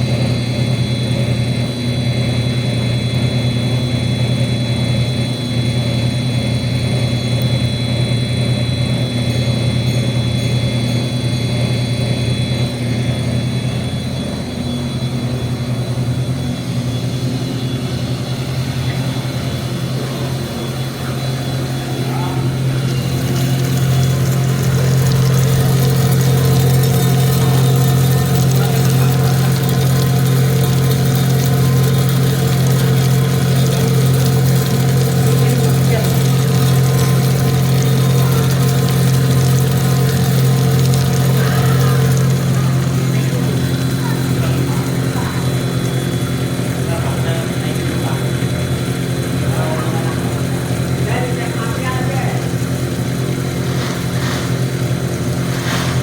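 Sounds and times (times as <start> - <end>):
extruder machine hum: 0.0 - 56.0
high whine: 6.9 - 44.1.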